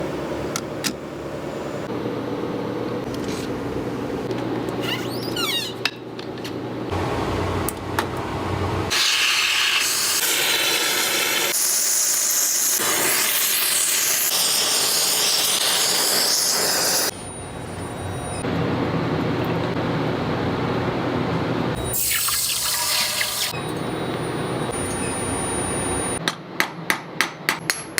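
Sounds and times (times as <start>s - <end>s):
workshop machine noise: 0.0s - 27.9s
loud steady hiss: 8.9s - 17.1s.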